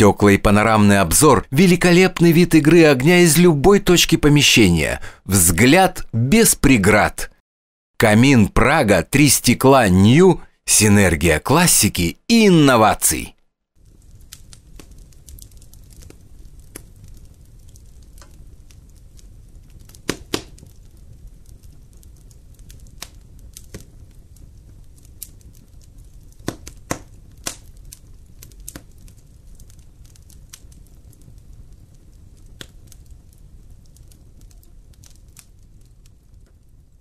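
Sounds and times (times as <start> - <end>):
logs crackling and popping: 0.0 - 7.4, 8.3 - 37.0
low rumble of flames: 13.8 - 37.0.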